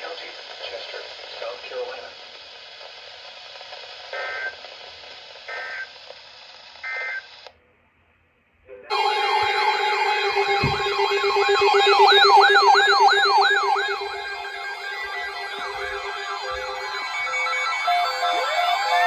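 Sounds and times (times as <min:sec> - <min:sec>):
radio hiss: 0:00.0 - 0:07.5, 0:08.9 - 0:19.0
data tone bursts: 0:08.9 - 0:19.0
electronic synthesizer music: 0:08.9 - 0:19.0.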